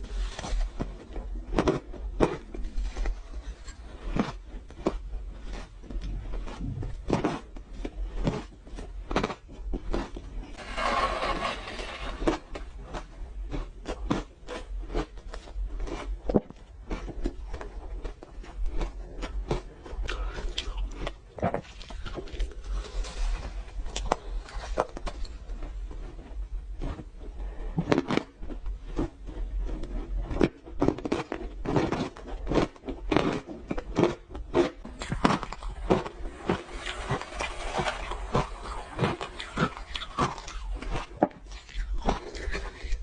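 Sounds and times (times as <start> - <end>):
crunching and chewing ice: 0.0 - 10.6, 12.3 - 43.0.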